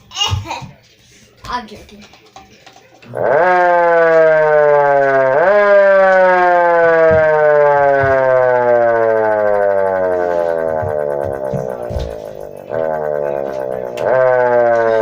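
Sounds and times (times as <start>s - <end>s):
siren wailing and winding down: 3.1s - 15.0s.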